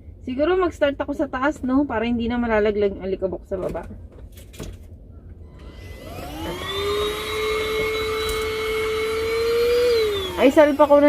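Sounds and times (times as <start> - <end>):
mini vacuum cleaner whining: 5.4 - 11.0.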